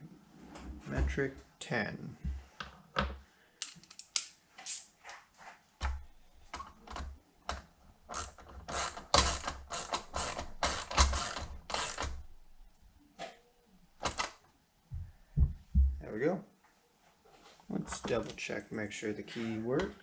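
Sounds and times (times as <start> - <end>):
ratchet wrench clicking: 8.1 - 12.2.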